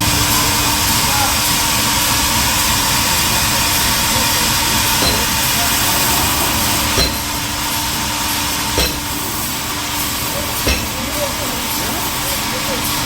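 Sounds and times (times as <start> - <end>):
sawmill machinery running: 0.0 - 13.0.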